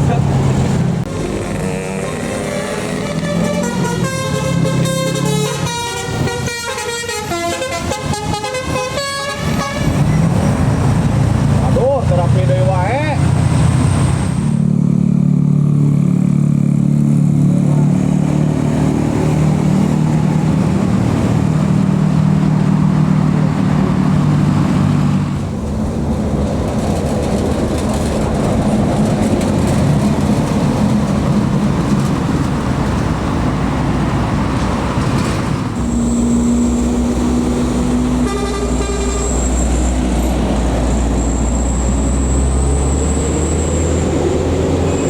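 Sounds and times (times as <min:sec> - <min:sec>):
diesel engine drone: 0:00.0 - 0:45.0
heavy traffic passing: 0:00.0 - 0:45.0
road and tyre noise: 0:00.0 - 0:45.0
steady engine tone: 0:33.3 - 0:45.0.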